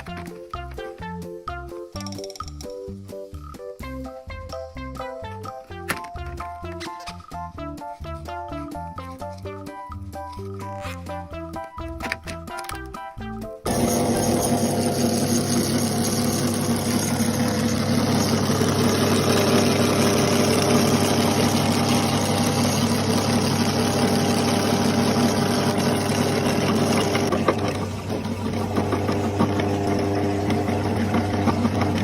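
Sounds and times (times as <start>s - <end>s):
electric meat grinder running: 13.7s - 32.0s.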